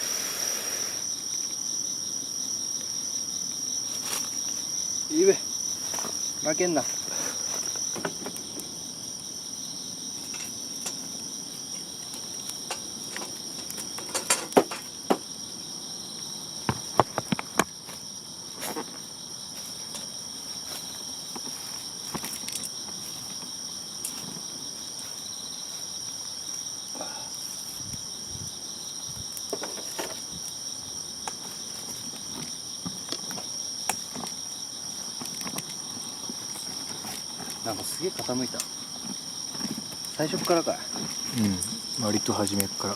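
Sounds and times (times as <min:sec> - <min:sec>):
crickets and insects chirring: 0:00.0 - 0:42.9
sharp snaps and cracks: 0:10.2 - 0:14.9.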